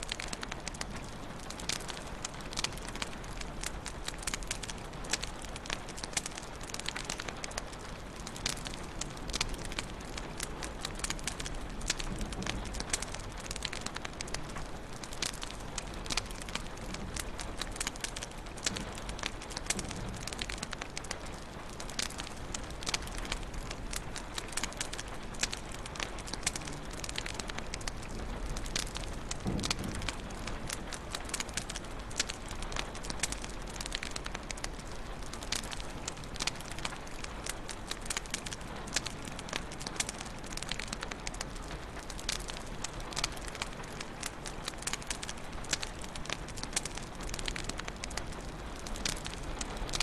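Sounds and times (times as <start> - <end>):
fire popping and snapping: 0.0 - 50.0
low fire rumble: 0.0 - 50.0.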